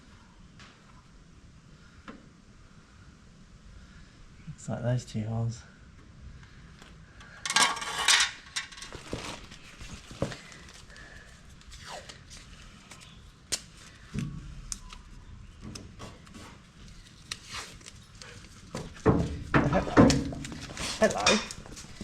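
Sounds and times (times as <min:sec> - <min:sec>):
metal tools clinking and scraping: 0:07.4 - 0:09.4, 0:21.0 - 0:21.7.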